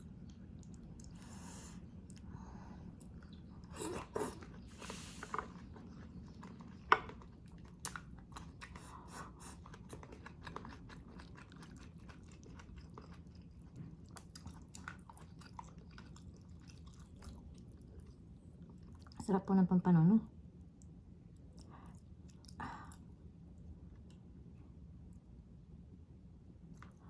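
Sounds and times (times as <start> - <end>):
person chewing food: 0.1 - 19.2, 20.6 - 25.3.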